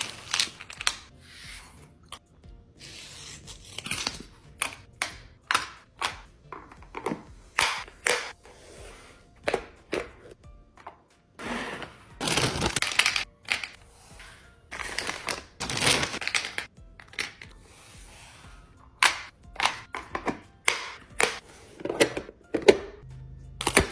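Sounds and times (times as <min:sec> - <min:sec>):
packaging crinkling: 0:00.0 - 0:01.1, 0:14.8 - 0:17.4
plastic containers clicking and tapping: 0:04.6 - 0:08.4, 0:15.0 - 0:17.5, 0:19.0 - 0:23.0.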